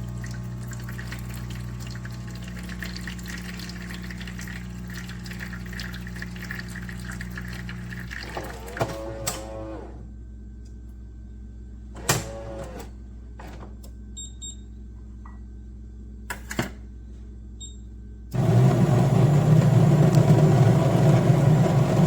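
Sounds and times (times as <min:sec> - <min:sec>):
espresso machine humming: 0:00.0 - 0:10.0, 0:18.4 - 0:22.0
motor running loudly: 0:18.4 - 0:22.0.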